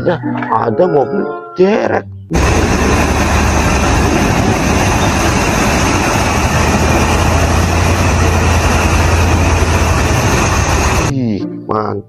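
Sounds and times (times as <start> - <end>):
truck engine rumbling: 2.3 - 11.1.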